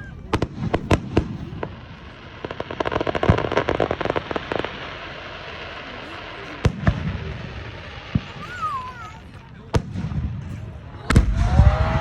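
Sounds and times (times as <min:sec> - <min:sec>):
fireworks crackling pops: 0:00.0 - 0:12.0
sharp firework bangs: 0:00.0 - 0:12.0
deep firework boom: 0:09.7 - 0:12.0.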